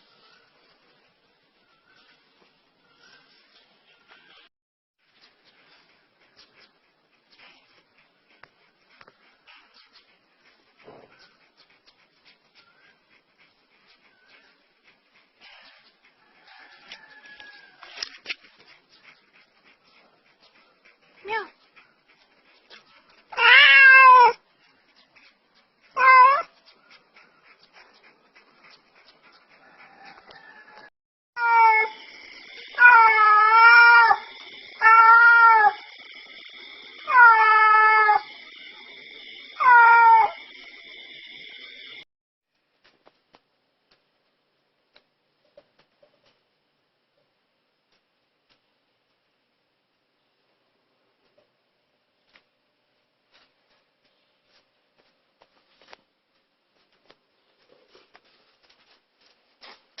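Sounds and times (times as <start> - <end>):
cat meowing loudly: 23.4 - 24.4, 26.0 - 26.5, 31.4 - 32.0, 32.8 - 34.2, 34.8 - 35.8, 37.0 - 38.3, 39.6 - 40.4
steady high-pitched hum: 31.8 - 42.0.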